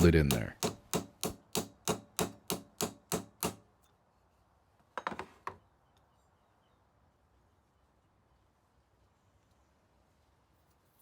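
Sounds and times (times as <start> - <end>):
hammer striking metal tool: 0.0 - 3.6.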